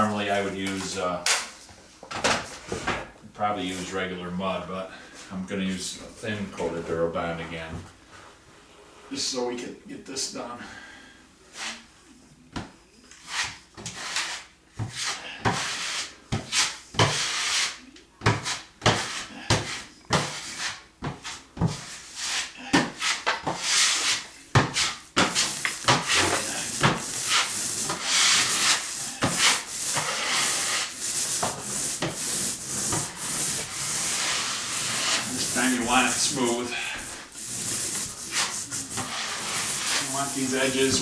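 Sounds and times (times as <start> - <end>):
drywall knife scraping compound: 13.2 - 41.0.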